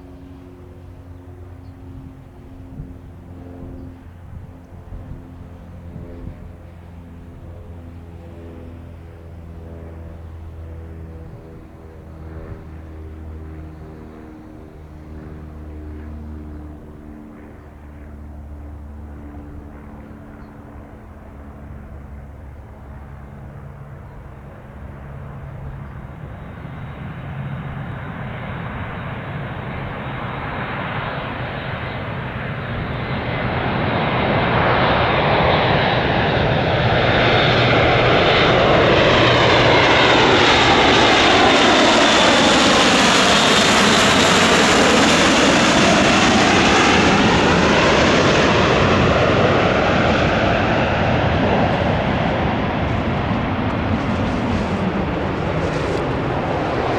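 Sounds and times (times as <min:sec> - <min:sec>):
turboprop aircraft engines droning: 0:00.0 - 0:56.9
aircraft sweeping whoosh: 0:27.0 - 0:56.9.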